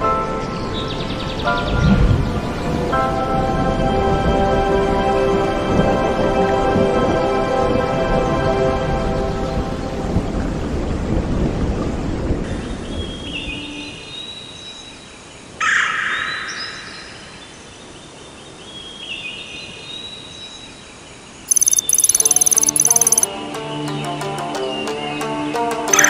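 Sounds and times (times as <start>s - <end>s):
thin bird calls: 21.5s - 23.3s.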